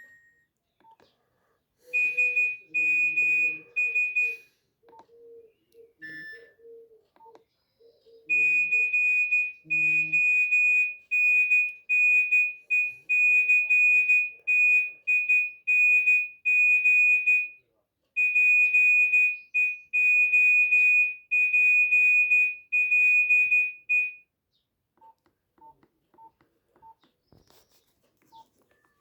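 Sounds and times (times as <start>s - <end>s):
phone high beeps: 1.9s - 5.1s, 6.0s - 6.7s, 8.2s - 17.5s
faint lower beeps: 1.9s - 15.5s
click: 4.9s - 5.1s, 7.2s - 7.4s.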